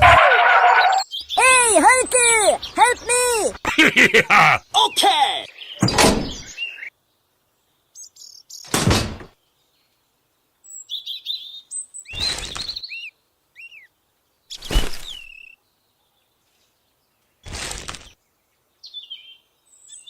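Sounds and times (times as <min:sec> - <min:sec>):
bird chirps: 0:00.7 - 0:03.0, 0:04.6 - 0:06.9, 0:07.9 - 0:08.7, 0:10.7 - 0:13.9, 0:14.5 - 0:15.6.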